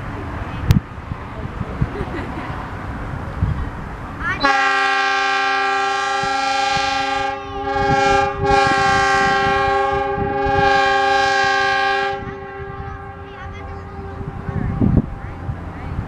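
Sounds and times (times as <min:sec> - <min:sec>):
locomotive air horn blasts: 0:04.4 - 0:15.2.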